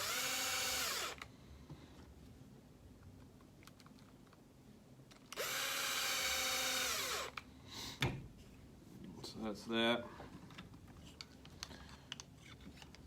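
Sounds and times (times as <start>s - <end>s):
power drill motor spinning: 0.0s - 1.3s, 5.3s - 7.4s.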